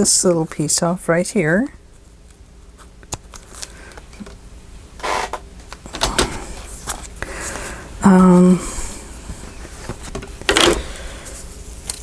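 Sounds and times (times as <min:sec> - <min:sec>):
paper rustling: 0:02.8 - 0:03.9, 0:06.1 - 0:07.8.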